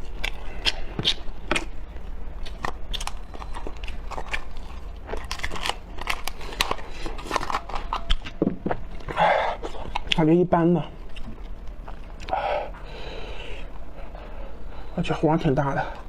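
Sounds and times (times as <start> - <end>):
crab shell cracking and crunching: 0.0 - 10.3.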